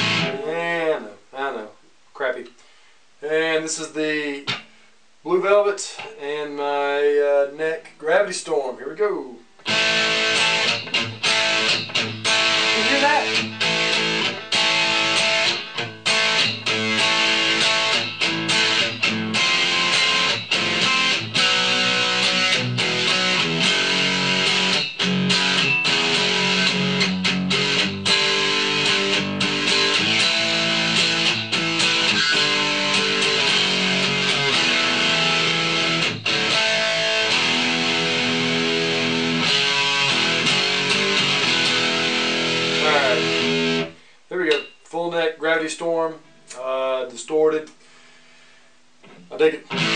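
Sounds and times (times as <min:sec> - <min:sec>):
electric guitar through amplifier: 0:00.0 - 0:01.0, 0:09.6 - 0:44.7, 0:47.6 - 0:49.9.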